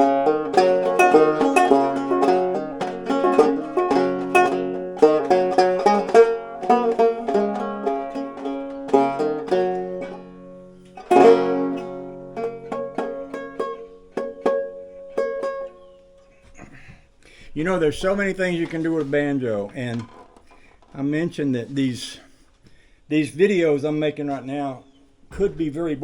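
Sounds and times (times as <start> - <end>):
banjo plucked and strummed: 0.0 - 16.4, 17.8 - 20.4.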